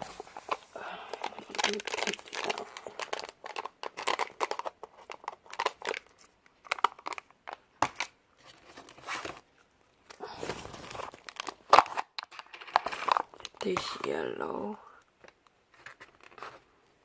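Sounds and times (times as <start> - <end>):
plastic wrap crinkling and tearing: 0.0 - 9.4, 10.1 - 13.8.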